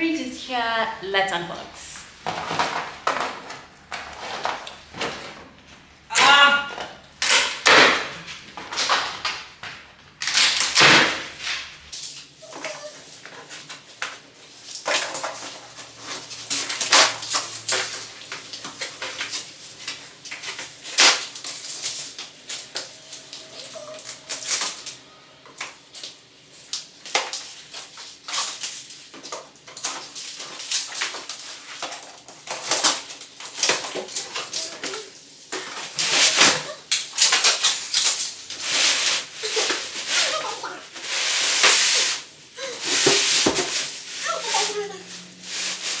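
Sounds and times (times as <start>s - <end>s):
cardboard packaging tearing: 10.2s - 46.0s
packaging rustling: 12.1s - 46.0s.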